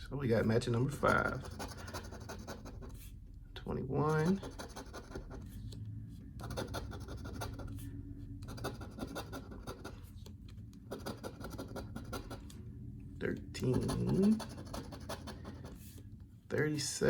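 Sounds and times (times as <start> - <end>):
scratching a lottery ticket: 0.9 - 3.1, 4.1 - 5.6, 6.4 - 12.6, 13.2 - 16.1.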